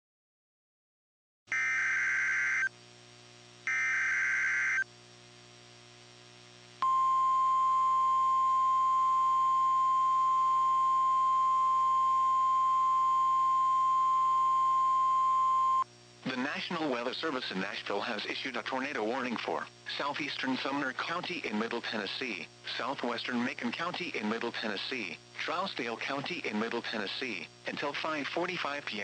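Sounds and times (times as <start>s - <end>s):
steady warning alarm tone: 1.5s - 2.7s, 3.7s - 4.8s.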